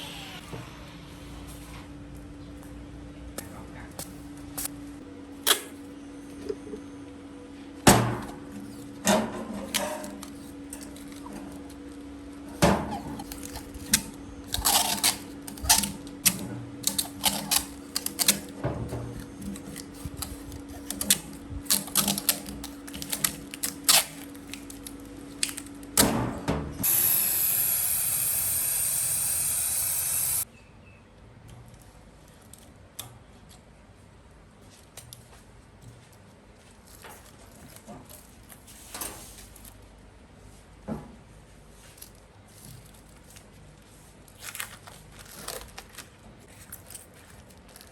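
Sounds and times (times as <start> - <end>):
steady hum: 0.0 - 30.5
loud steady hiss: 26.8 - 30.4.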